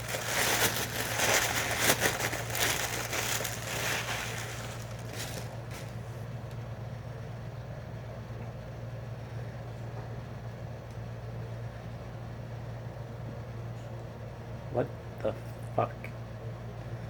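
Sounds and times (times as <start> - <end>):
packaging crinkling: 0.0 - 6.2
low hum: 0.0 - 6.6.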